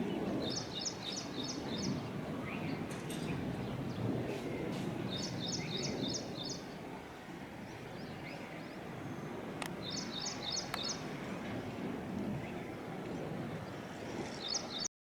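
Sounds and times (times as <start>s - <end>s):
songbird chirping: 0.0s - 6.8s, 7.6s - 11.4s
low outdoor rumble: 0.0s - 14.9s.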